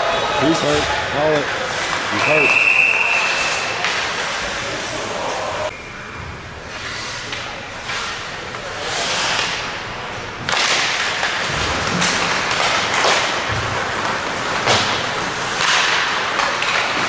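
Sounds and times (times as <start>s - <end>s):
skates scraping on ice: 1.5s - 5.5s, 6.7s - 9.6s, 10.5s - 17.0s.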